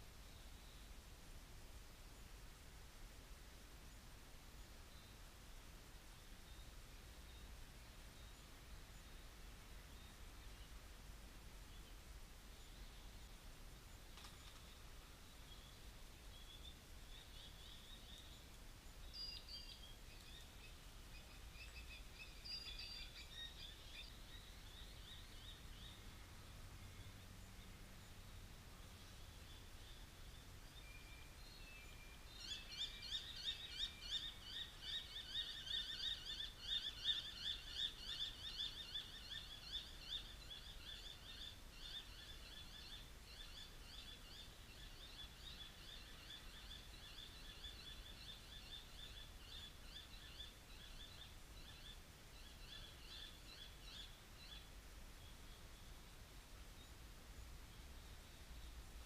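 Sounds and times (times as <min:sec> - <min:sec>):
bird chirping: 0:11.6 - 0:56.2.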